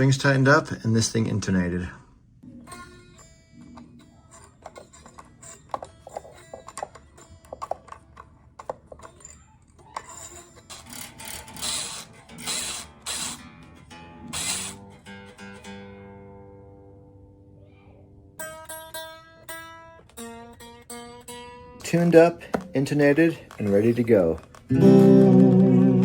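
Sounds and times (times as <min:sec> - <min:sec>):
electric guitar strums: 0:24.4 - 0:26.0.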